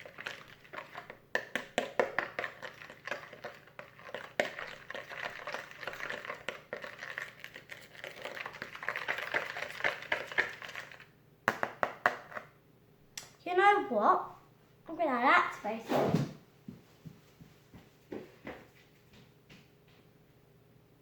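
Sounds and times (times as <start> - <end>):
spoon scraping a bowl: 0.0 - 11.0
spoon stirring in a bowl: 0.0 - 11.1.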